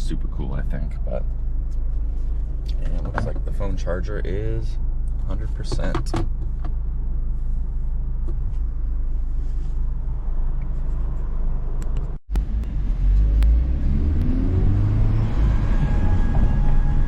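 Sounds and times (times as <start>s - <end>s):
road noise inside car: 0.0s - 17.0s
car engine accelerating: 10.4s - 17.0s.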